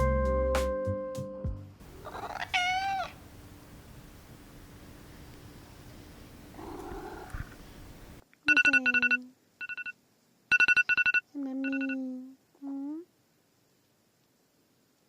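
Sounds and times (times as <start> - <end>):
phone alarm beeping: 8.5 - 12.0.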